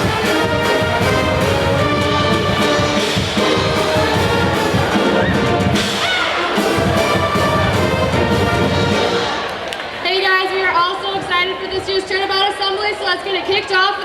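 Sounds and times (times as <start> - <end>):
steady drum beat: 0.0 - 9.5
brass band playing: 0.0 - 10.0.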